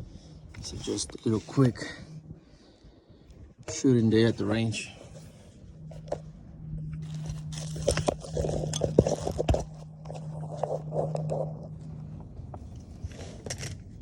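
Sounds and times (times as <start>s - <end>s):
low hum: 0.0s - 14.0s
handling clicks and scrapes: 5.0s - 14.0s.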